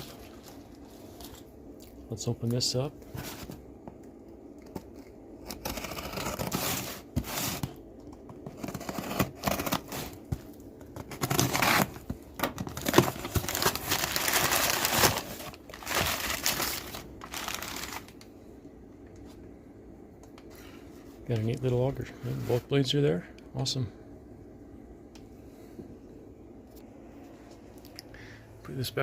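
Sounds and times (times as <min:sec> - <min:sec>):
packaging tearing and crinkling: 0:08.5 - 0:10.3, 0:11.0 - 0:18.2.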